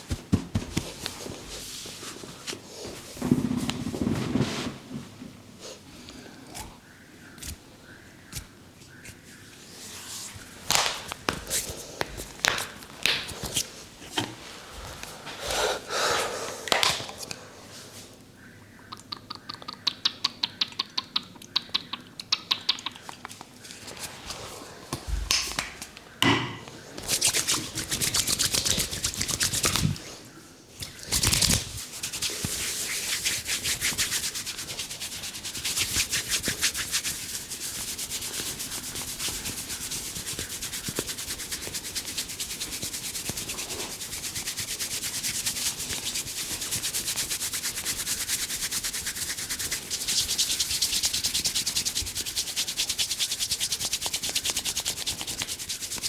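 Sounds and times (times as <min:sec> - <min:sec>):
rubbing on hair: 0:27.0 - 0:30.2, 0:30.9 - 0:56.0.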